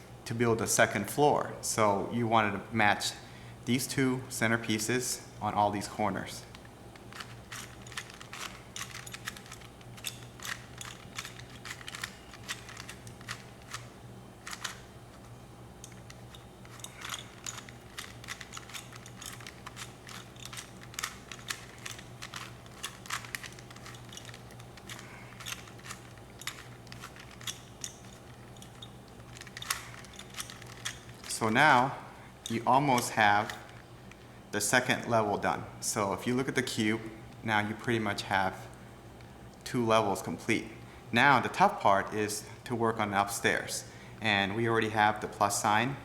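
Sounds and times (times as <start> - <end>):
faint steady hum: 0.0 - 46.0
puzzle cube clicking: 7.0 - 14.9, 15.9 - 31.3.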